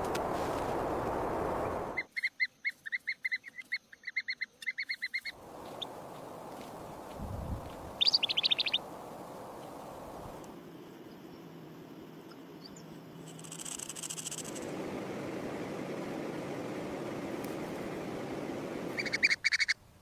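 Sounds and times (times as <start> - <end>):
bird chirping: 1.6 - 10.0, 12.2 - 19.8
bird trill: 7.9 - 8.9, 12.6 - 19.8.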